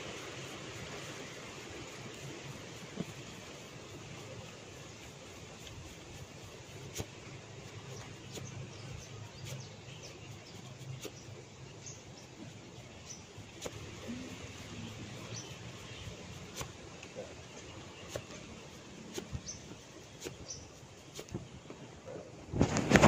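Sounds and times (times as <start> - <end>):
birds chirping faintly: 0.0 - 23.0.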